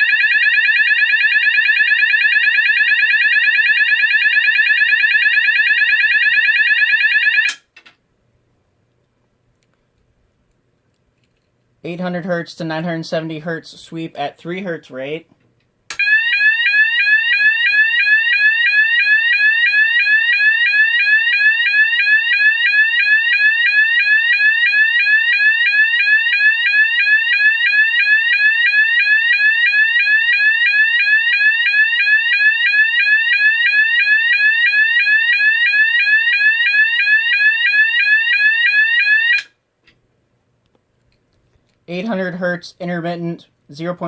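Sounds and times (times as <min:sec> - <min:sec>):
fire alarm warbling sweep tone: 0:00.0 - 0:07.6, 0:16.0 - 0:39.5.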